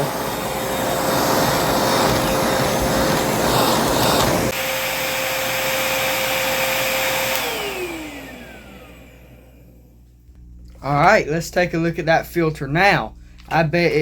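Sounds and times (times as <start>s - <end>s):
rough rushing noise: 0.0s - 4.6s
vacuum cleaner whine: 0.0s - 10.3s.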